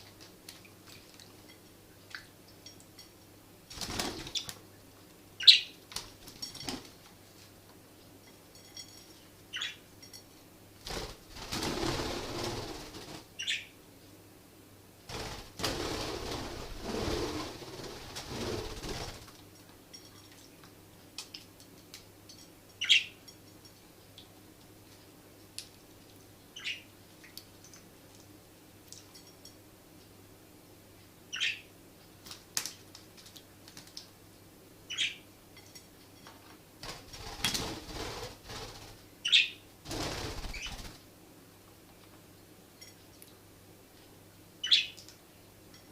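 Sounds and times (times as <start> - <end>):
budgies flapping wings: 3.7 - 4.6, 10.8 - 13.5, 15.1 - 19.4, 36.8 - 39.0, 39.9 - 41.0
budgerigar chirping: 13.4 - 13.7, 34.9 - 35.2.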